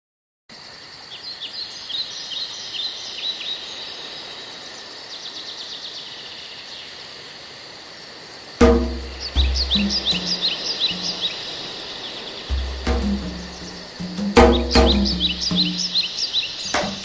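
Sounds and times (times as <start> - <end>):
insect pulsing very high: 8.6 - 11.5, 12.5 - 17.0
birds chirping: 8.6 - 11.6, 12.2 - 17.0.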